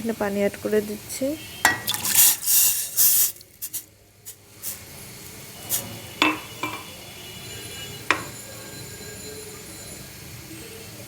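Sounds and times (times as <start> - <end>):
metal pot and utensils clinking: 1.7 - 3.8, 5.6 - 7.0, 8.0 - 9.0.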